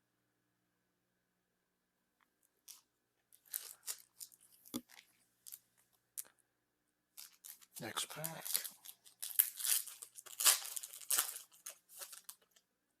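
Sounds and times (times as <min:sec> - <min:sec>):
card packaging crinkling: 0:02.7 - 0:05.6, 0:07.2 - 0:12.6.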